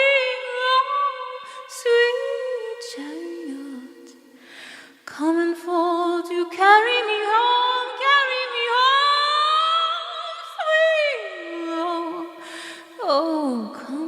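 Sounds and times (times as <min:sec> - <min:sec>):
a cappella voices singing hymn: 0:00.0 - 0:04.2.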